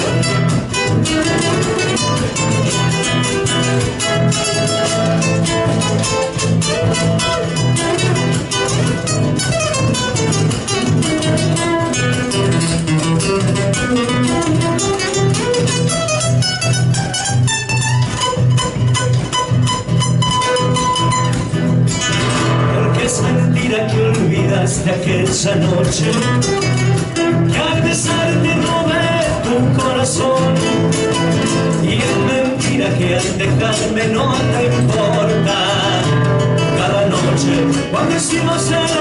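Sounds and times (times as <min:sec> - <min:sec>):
plucked guitars picking melody: 0:00.0 - 0:39.0.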